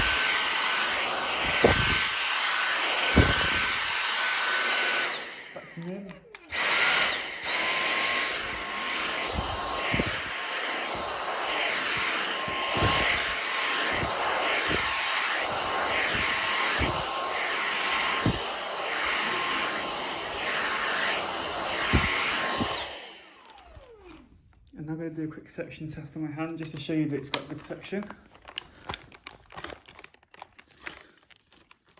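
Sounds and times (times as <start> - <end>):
vacuum motor whine: 0.0 - 24.3
brush head thuds on rug: 1.4 - 2.1, 3.1 - 3.7, 9.2 - 10.3, 10.9 - 17.3, 18.1 - 18.6, 21.6 - 22.8.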